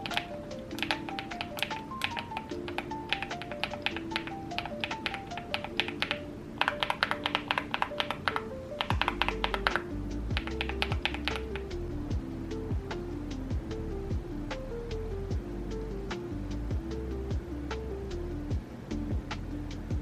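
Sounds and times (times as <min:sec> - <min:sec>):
mechanical keyboard typing: 0:00.0 - 0:11.7
background music with melody: 0:00.0 - 0:20.0
deep bass: 0:09.0 - 0:20.0.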